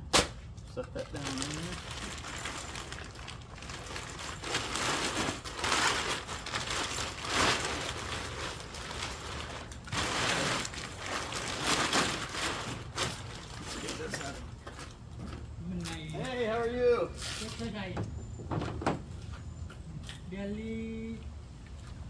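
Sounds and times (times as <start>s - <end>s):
tent fabric rustling: 1.1s - 14.4s.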